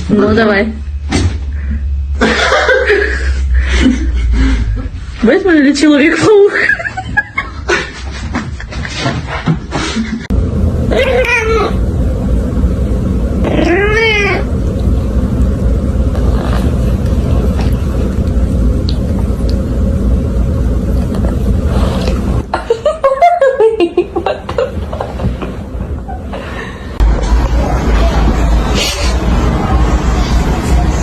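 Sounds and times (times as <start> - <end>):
steady low rumble: 0.0 - 8.8, 10.2 - 31.0
cat meowing: 10.9 - 11.8, 13.4 - 14.5.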